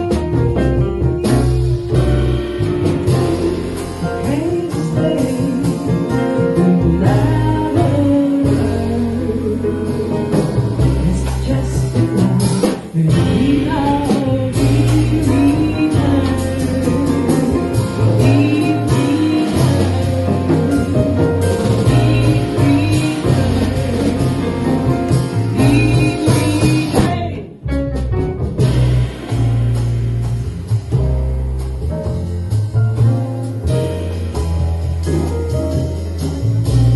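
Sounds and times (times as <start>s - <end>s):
piano: 0.0s - 36.9s
plucked double bass: 0.0s - 36.9s
woman singing: 2.9s - 27.6s.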